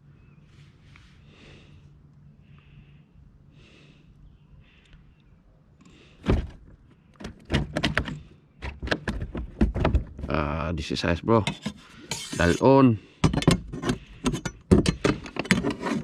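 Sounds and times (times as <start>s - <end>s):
hard knocks and clattering: 6.2s - 10.4s, 13.2s - 16.0s.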